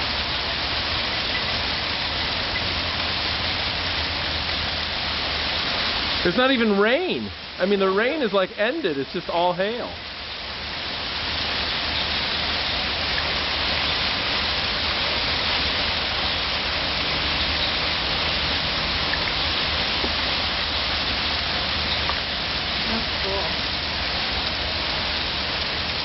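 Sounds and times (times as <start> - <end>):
hail falling hard: 2.0 - 26.0.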